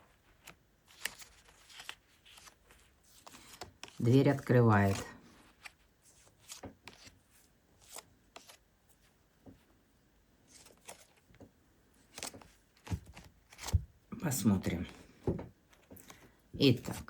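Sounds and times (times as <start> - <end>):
cards shuffling and rustling: 0.0 - 8.6, 10.5 - 11.4, 12.0 - 13.9, 15.7 - 17.0
cards thumping down: 12.1 - 13.9.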